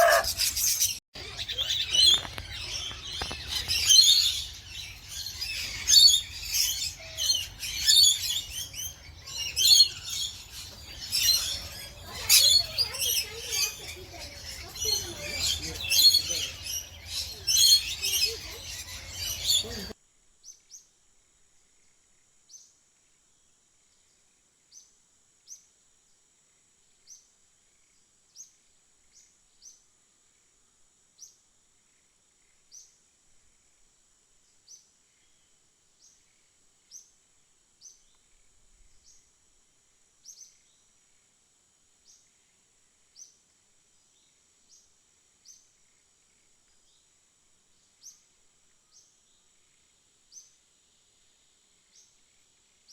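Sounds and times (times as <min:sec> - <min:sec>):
birds chattering and chirping: 0:00.0 - 0:20.0.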